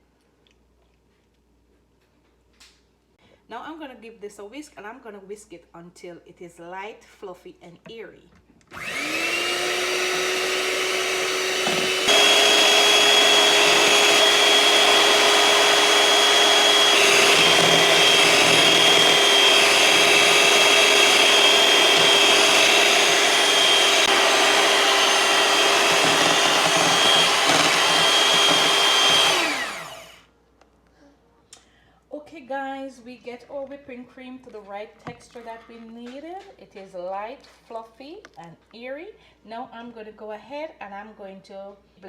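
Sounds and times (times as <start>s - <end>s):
electric mixer motor whining: 8.7s - 30.2s.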